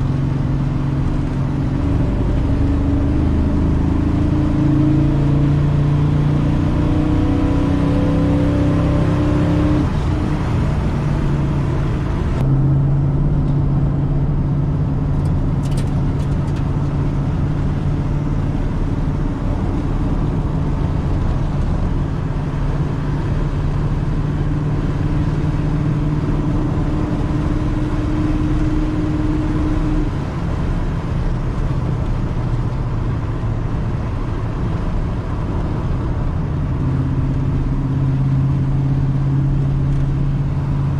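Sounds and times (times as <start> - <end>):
vehicle engine running: 9.6 - 40.9.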